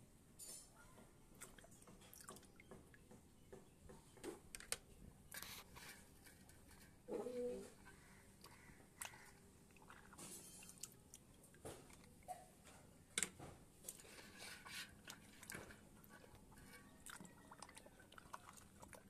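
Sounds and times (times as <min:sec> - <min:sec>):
soft rustles of handling: 0:03.8 - 0:17.8.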